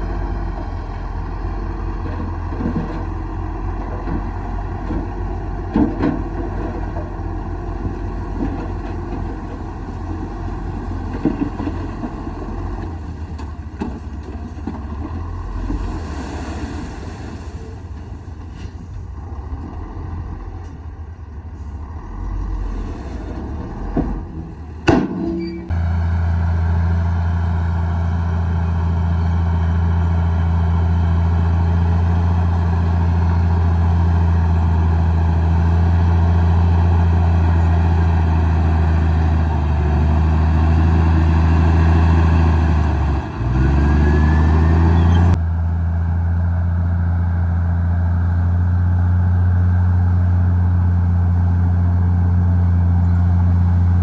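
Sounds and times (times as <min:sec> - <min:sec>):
bulldozer diesel engine running: 0:00.0 - 0:54.0
sharp metal clank: 0:24.9 - 0:25.7.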